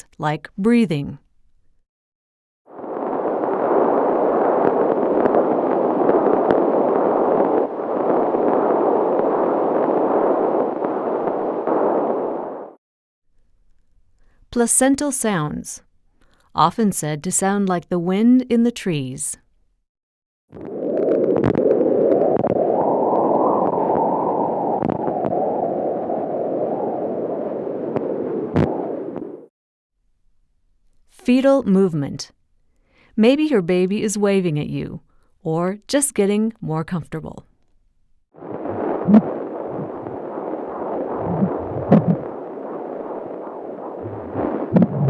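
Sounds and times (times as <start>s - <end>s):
fetal doppler rushing noise: 20.6s - 29.5s, 38.4s - 45.0s
doppler blood flow whoosh: 38.4s - 45.0s.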